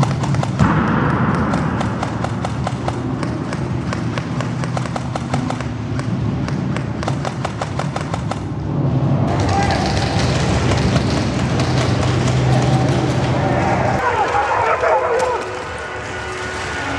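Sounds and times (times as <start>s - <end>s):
airsoft gun shots: 0.0s - 8.5s
low rumble: 0.0s - 16.9s.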